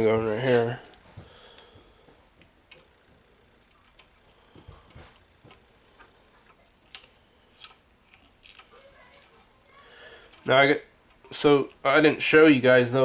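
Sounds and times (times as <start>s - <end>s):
metal ratchet parts clicking: 6.4s - 12.6s.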